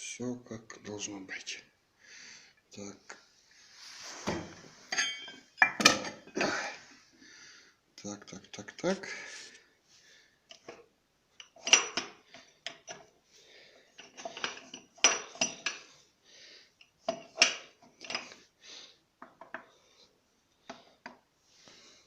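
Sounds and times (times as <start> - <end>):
steel parts clinking and clattering: 4.9 - 6.4, 11.4 - 13.0, 14.0 - 15.9.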